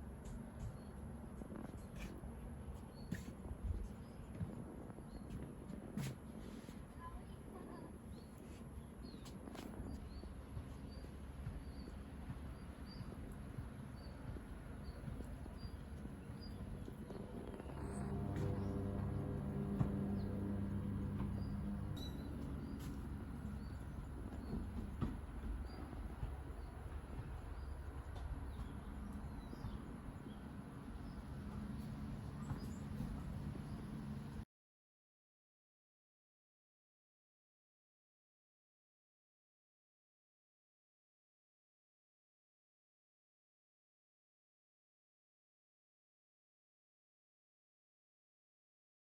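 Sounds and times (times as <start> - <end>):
low background rumble: 9.9 - 34.4.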